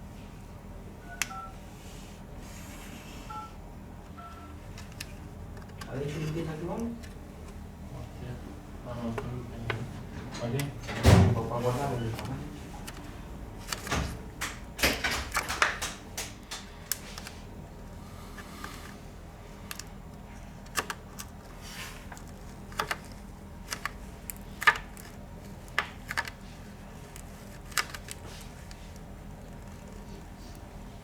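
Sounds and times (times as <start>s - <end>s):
hard objects clicking and tapping: 13.7s - 17.3s.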